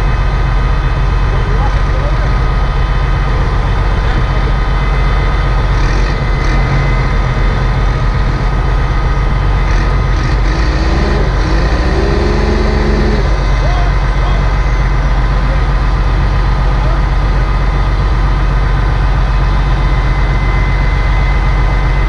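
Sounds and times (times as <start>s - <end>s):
diesel engine running: 0.0s - 22.0s.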